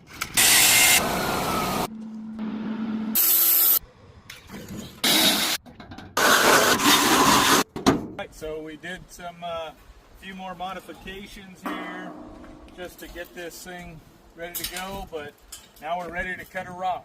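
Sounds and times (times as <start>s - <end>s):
power tools cutting or grinding: 0.3s - 3.8s, 6.2s - 7.6s
steady low hum: 11.6s - 14.4s.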